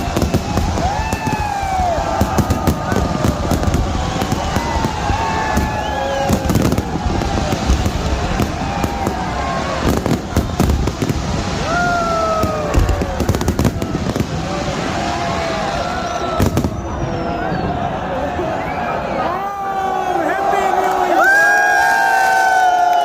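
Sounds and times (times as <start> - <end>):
fireworks whistling: 0.0 - 17.9
fireworks bangs and crackles: 0.0 - 18.4.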